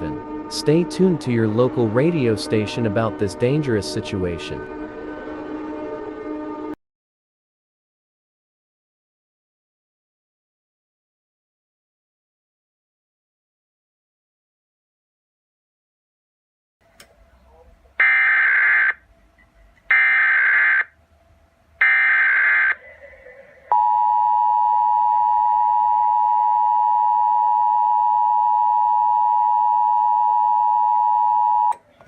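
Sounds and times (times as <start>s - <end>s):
two-tone attention signal: 23.7s - 31.8s.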